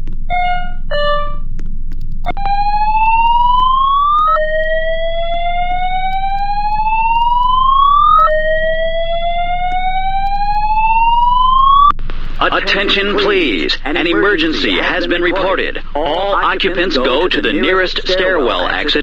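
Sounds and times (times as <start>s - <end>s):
low steady hum: 0.0s - 19.0s
fire alarm whoop tone: 2.3s - 11.9s.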